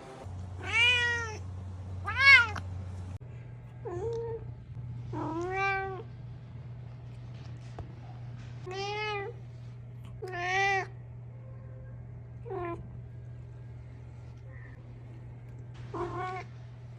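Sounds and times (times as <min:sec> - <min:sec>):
low hum: 0:00.0 - 0:16.9
cat meowing: 0:00.6 - 0:01.4, 0:02.0 - 0:02.6, 0:05.2 - 0:06.1, 0:08.7 - 0:09.4, 0:10.2 - 0:10.9, 0:15.9 - 0:16.5.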